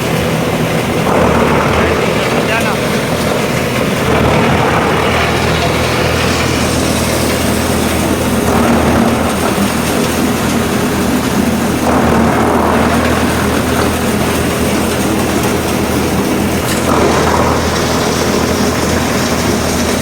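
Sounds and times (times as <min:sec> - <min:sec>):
rush of noise: 0:00.0 - 0:20.0
wood chipper running: 0:00.0 - 0:20.0.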